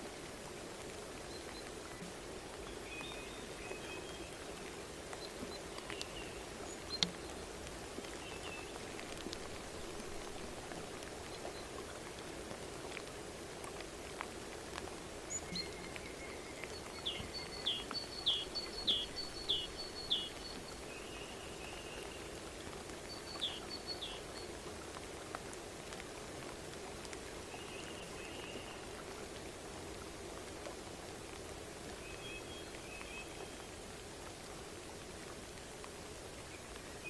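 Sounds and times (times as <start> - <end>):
faint ticks: 5.1 - 8.2
songbirds calling: 15.3 - 22.3.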